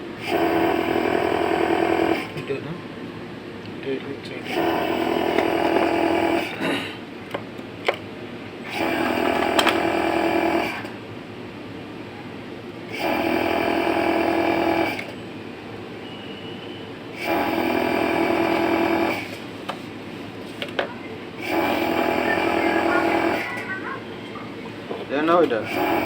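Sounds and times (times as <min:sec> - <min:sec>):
sewing machine motor whining: 0:00.2 - 0:02.5, 0:04.4 - 0:06.6, 0:08.7 - 0:10.9, 0:12.9 - 0:15.2, 0:17.1 - 0:19.4, 0:21.4 - 0:24.4, 0:25.4 - 0:26.0.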